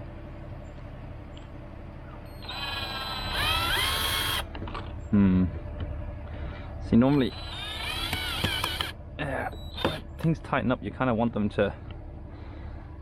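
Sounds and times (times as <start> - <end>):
power drill motor whining: 2.3 - 4.5, 7.1 - 10.1.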